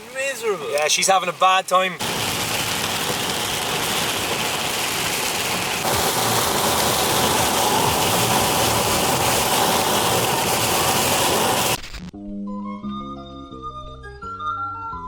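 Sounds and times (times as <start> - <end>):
heavy rain on car roof: 0.0 - 11.8.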